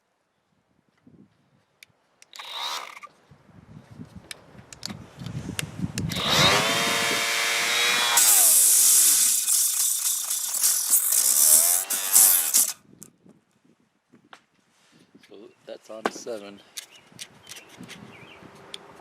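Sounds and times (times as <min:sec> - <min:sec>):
orbital sander motor running: 0:06.2 - 0:12.8.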